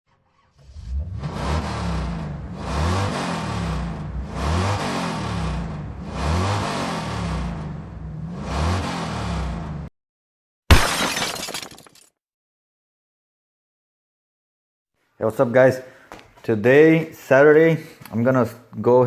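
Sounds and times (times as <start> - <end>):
car engine revving: 0.4 - 9.9.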